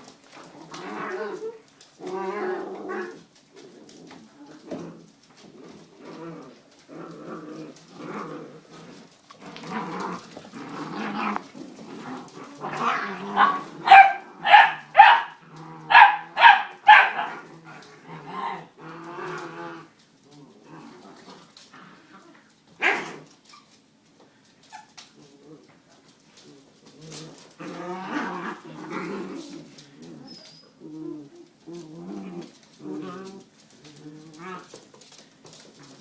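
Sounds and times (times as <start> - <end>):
puppies growling: 0.0 - 36.0
puppies yapping barks: 12.8 - 17.5.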